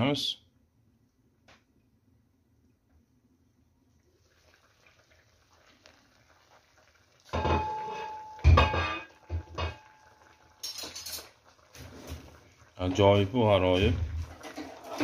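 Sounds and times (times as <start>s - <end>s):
metal pot lid clanking and ringing: 7.3s - 11.3s.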